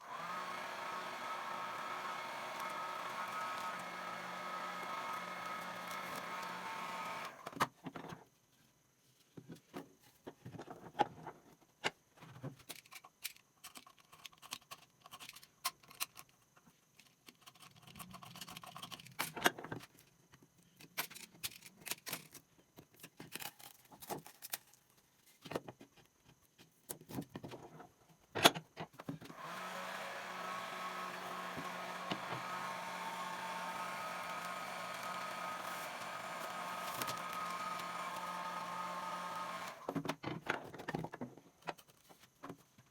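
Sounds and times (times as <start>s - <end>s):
small electric motor whirring: 0.0s - 7.6s, 29.3s - 40.0s.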